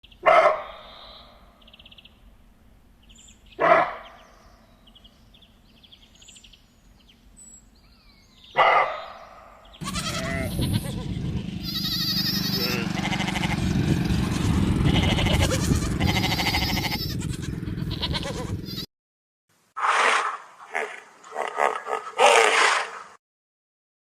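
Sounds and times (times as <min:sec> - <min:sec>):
animal bleating: 0:09.8 - 0:13.7, 0:14.3 - 0:18.9.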